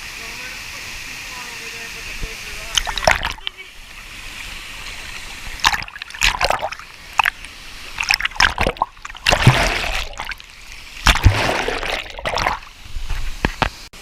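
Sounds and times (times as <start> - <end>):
loud water splashing: 2.6 - 3.6, 5.5 - 13.1.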